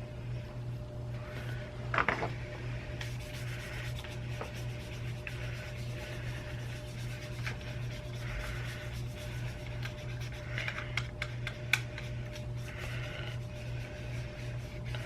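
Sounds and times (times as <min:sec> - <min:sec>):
low hum: 0:00.0 - 0:15.0
rubbing plastic mouse parts: 0:03.0 - 0:15.0.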